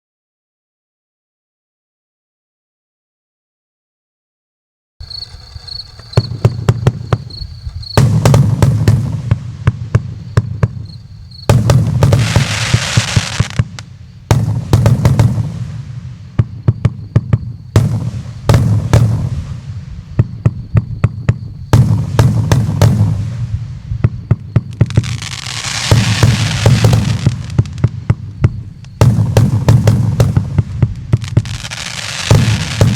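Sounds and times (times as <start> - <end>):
firework crackling hiss: 5.0 - 16.6, 17.4 - 20.6, 21.4 - 32.9
firework launch pops and bursts: 5.0 - 32.9.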